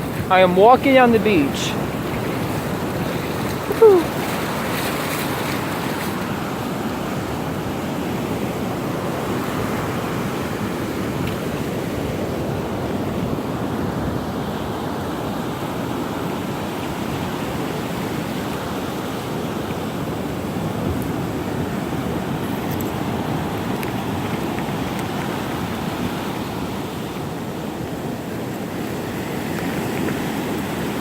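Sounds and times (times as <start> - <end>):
surf breaking on a beach: 0.0 - 31.0
wind on microphone: 1.0 - 17.0.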